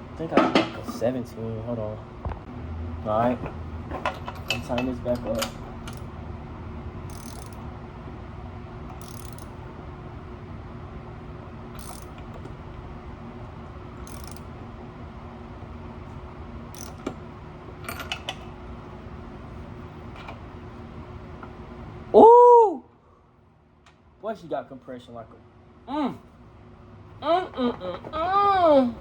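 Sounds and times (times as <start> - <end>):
ratchet wrench clicking: 4.4 - 6.1, 7.0 - 7.6, 8.9 - 9.6, 11.7 - 12.4, 14.0 - 14.5, 16.7 - 17.1.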